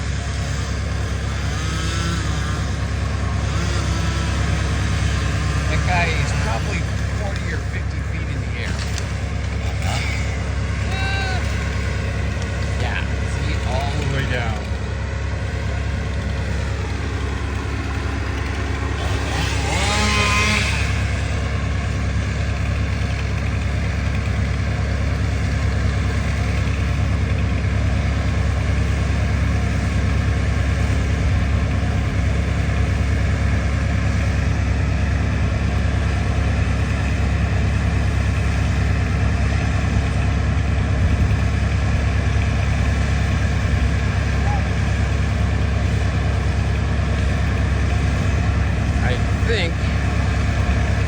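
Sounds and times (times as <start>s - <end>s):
engine idling: 0.0s - 51.0s.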